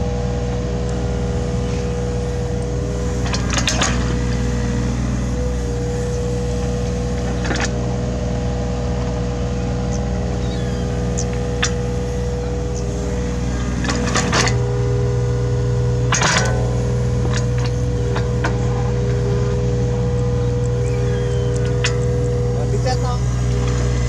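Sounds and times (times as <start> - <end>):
excavator diesel engine running: 0.0 - 24.0
sharp metallic knocks: 16.0 - 19.3.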